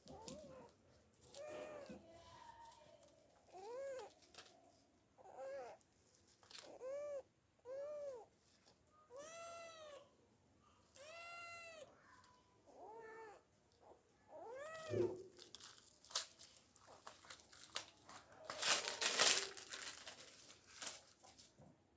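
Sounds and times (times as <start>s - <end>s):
scratching and rustling: 0.0s - 8.9s, 12.2s - 21.7s
cat meowing: 1.3s - 2.7s, 3.5s - 4.2s, 5.2s - 5.8s, 6.6s - 8.3s, 9.0s - 10.1s, 10.9s - 15.4s.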